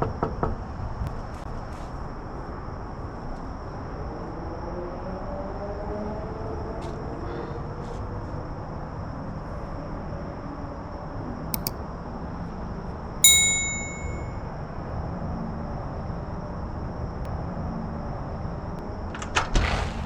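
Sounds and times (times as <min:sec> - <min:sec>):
bright metallic ding: 0:13.2 - 0:14.3.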